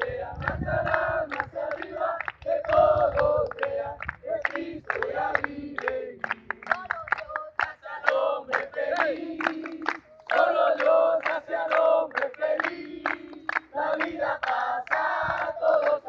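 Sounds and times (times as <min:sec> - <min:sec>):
voices chanting in unison: 0:00.0 - 0:16.0.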